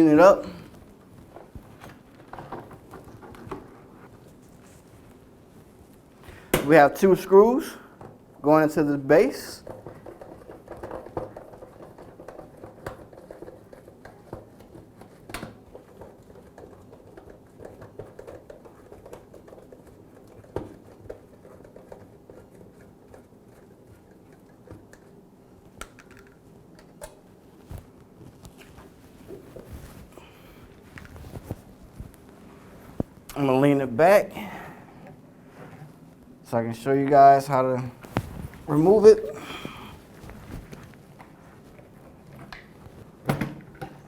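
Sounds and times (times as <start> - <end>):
low steady hum: 19.5 - 44.0.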